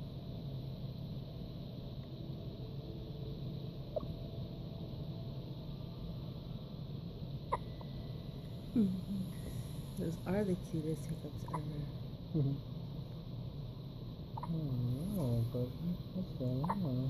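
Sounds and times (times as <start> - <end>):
steady low hum: 0.0 - 17.0
small sharp hiccups: 7.5 - 7.8.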